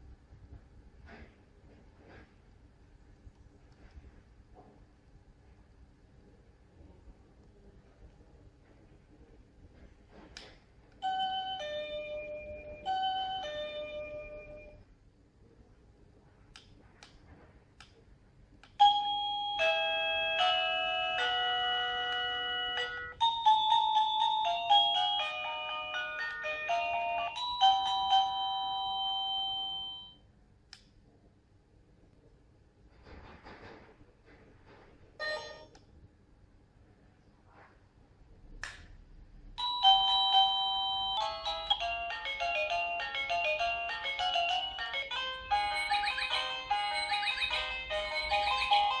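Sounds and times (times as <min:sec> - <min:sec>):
doorbell electronic chime melody: 0:11.0 - 0:14.8, 0:18.8 - 0:30.2, 0:39.6 - 0:49.0
click: 0:16.5 - 0:17.2, 0:17.8 - 0:18.0, 0:30.7 - 0:31.0
short tone: 0:35.2 - 0:35.8.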